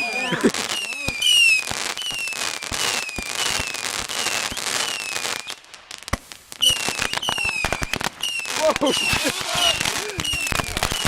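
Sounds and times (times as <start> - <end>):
whistling fireworks: 0.0 - 11.0
crackling pops: 0.4 - 11.0.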